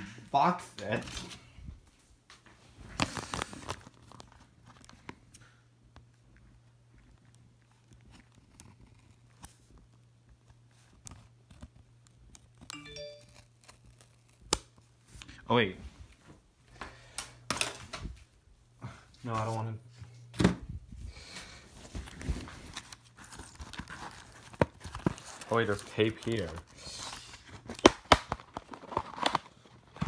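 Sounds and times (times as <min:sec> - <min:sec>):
packaging rustling and tearing: 0:02.8 - 0:05.4, 0:10.7 - 0:14.8, 0:21.8 - 0:30.0.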